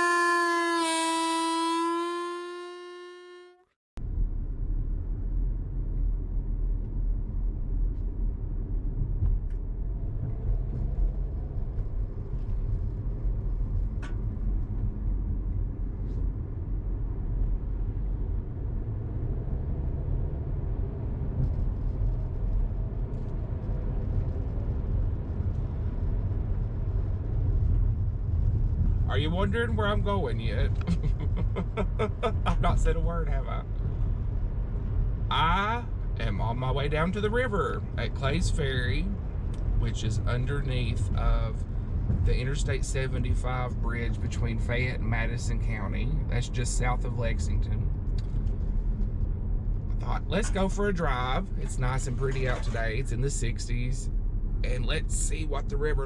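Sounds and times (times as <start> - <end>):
held pitched tone: 0.0 - 3.6
car cabin road and engine rumble: 4.0 - 56.0.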